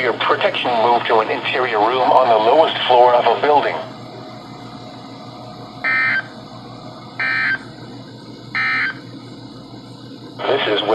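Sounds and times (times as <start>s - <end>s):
buzzy digital data bursts: 0.0s - 9.3s
radio hiss: 0.0s - 10.9s.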